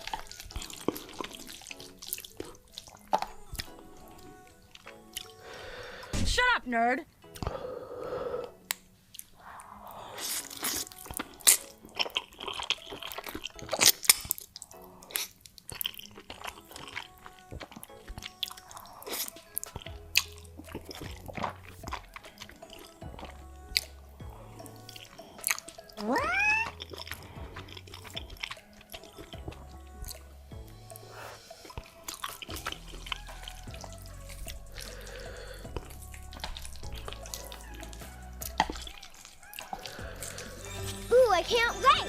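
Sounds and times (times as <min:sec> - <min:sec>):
crunching bites and chewing: 0:00.0 - 0:05.4, 0:10.1 - 0:41.0
background music with bass: 0:23.0 - 0:25.1, 0:25.9 - 0:28.5, 0:29.4 - 0:31.5, 0:32.5 - 0:38.9, 0:39.9 - 0:42.0.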